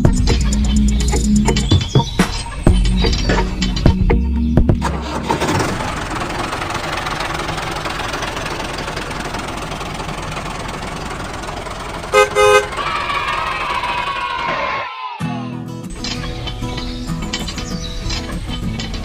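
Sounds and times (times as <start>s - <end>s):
vehicle engine running: 0.0s - 14.4s, 16.0s - 19.0s
horn toots: 12.1s - 13.0s.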